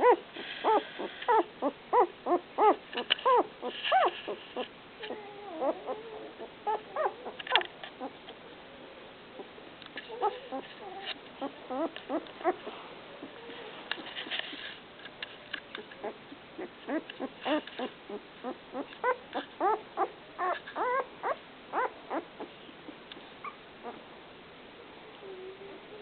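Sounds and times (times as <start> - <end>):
puppies squeaking and whimpering: 0.0 - 8.2, 10.0 - 14.3, 16.0 - 22.5, 23.4 - 24.0.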